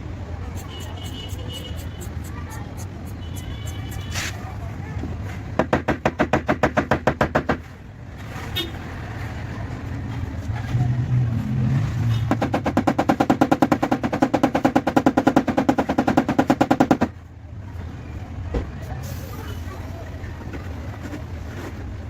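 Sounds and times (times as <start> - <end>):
metallic tapping on car panel: 12.3 - 17.1.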